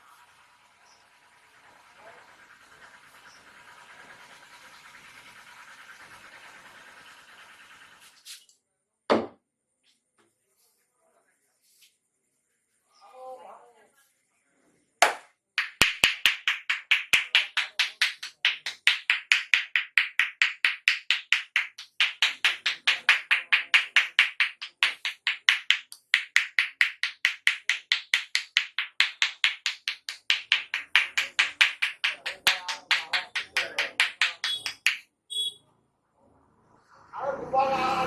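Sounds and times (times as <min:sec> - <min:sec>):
hands slapping massage strokes: 0:15.0 - 0:35.1.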